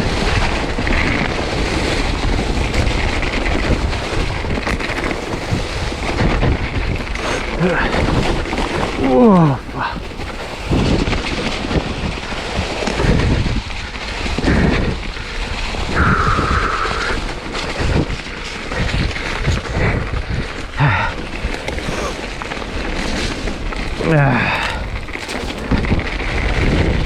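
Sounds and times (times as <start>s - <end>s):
bike knocks and rattles: 0.0s - 7.2s, 17.4s - 27.0s
wind noise on microphone: 0.0s - 27.0s.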